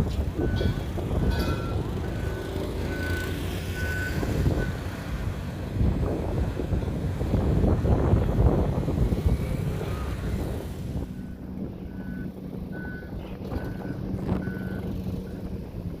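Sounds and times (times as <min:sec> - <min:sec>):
wind on microphone: 0:00.0 - 0:02.2, 0:03.8 - 0:16.0
engine hum: 0:00.0 - 0:16.0.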